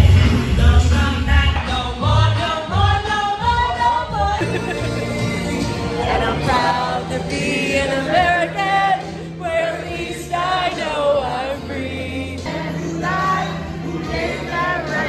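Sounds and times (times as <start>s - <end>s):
choir singing: 4.4s - 15.0s
instrumental backing: 4.4s - 15.0s.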